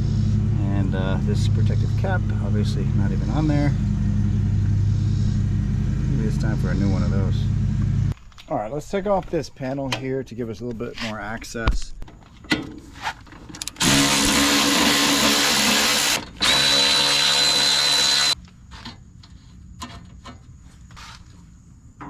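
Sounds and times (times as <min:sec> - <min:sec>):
power drill running: 0:13.8 - 0:18.4.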